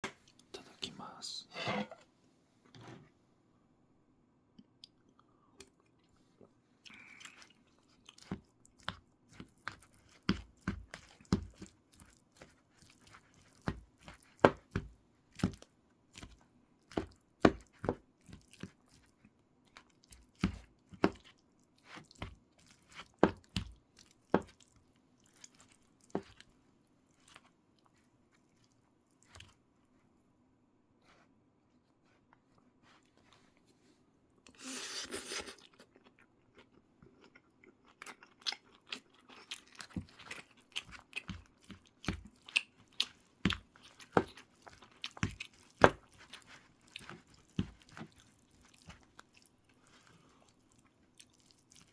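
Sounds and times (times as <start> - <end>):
chewing and biting: 6.8 - 29.6, 34.5 - 51.9.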